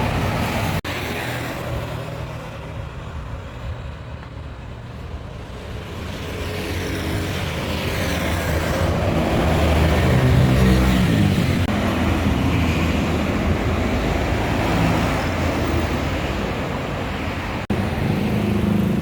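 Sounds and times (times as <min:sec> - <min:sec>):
bus engine rumbling: 0:00.0 - 0:19.0.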